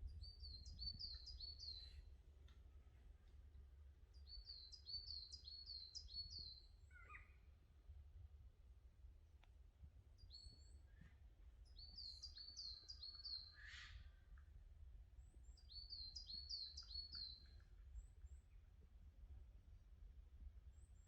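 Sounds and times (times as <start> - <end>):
songbird singing: 0.0 - 7.6, 10.1 - 19.0.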